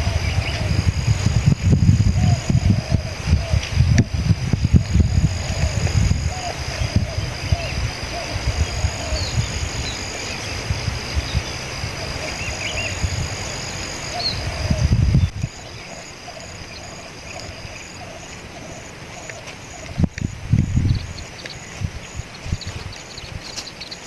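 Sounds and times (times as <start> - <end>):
dove cooing: 0.0 - 1.3, 1.9 - 10.6, 11.5 - 20.2
small birds chirping: 0.0 - 24.0.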